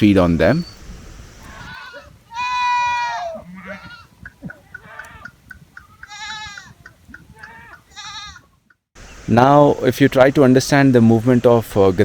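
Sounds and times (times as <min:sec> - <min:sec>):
sheep and goats bleating: 0:01.5 - 0:08.6.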